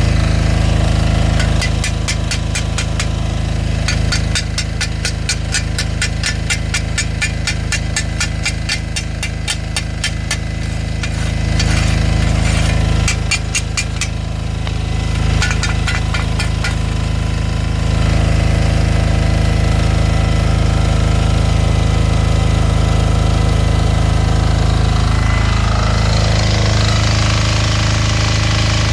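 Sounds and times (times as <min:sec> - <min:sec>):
diesel generator running: 0:00.0 - 0:28.9
rapid regular ticking: 0:03.9 - 0:11.8.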